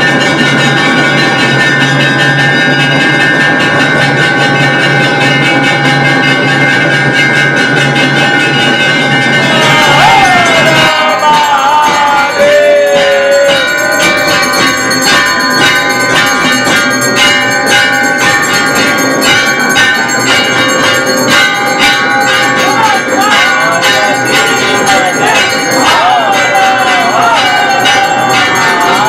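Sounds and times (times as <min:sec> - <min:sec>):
temple bells ringing: 0:00.0 - 0:29.0
faint voices: 0:09.0 - 0:16.9, 0:20.0 - 0:29.0.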